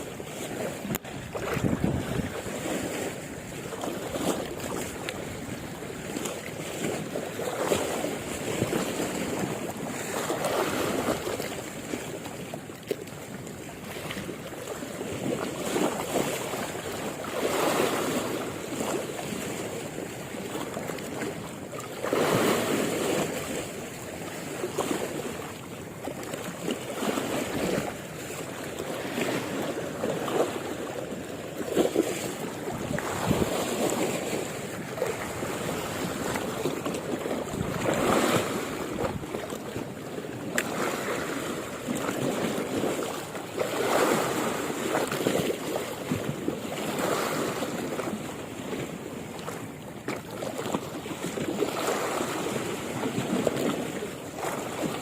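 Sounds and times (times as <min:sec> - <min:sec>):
wind buffeting microphone: 0:00.0 - 0:06.2, 0:32.4 - 0:39.5
sea waves washing in: 0:00.0 - 0:55.0.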